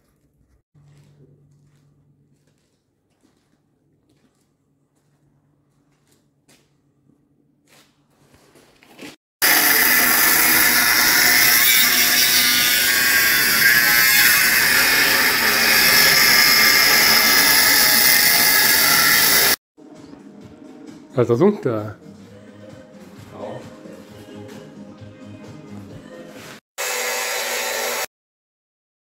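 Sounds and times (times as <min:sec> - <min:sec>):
power tool running: 0:09.4 - 0:19.6, 0:26.8 - 0:28.1.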